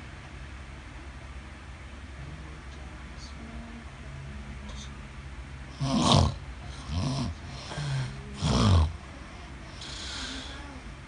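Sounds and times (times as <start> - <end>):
man snoring: 5.8 - 9.0
breathy exhale: 9.8 - 10.8.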